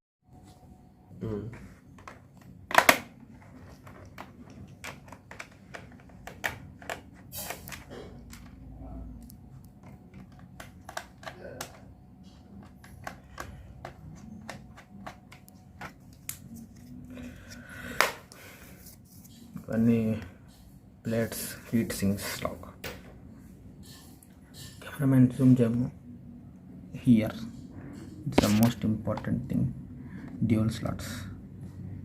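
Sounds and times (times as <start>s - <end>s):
plastic and metal parts clicking: 9.8s - 11.9s.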